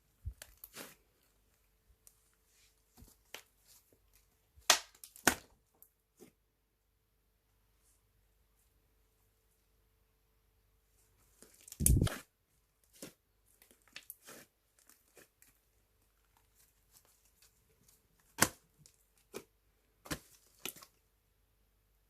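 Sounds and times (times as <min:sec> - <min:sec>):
slime squishing and crackling: 0:00.2 - 0:01.6, 0:11.4 - 0:21.0.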